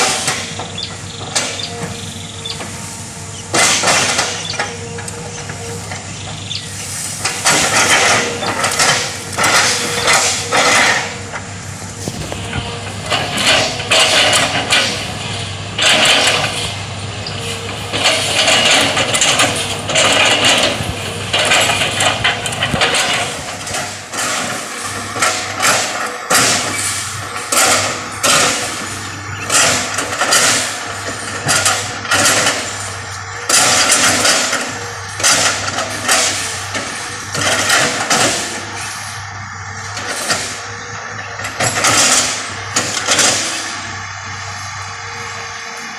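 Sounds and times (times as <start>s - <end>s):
excavator engine running: 0.0s - 45.9s
loud crunching: 0.0s - 45.9s.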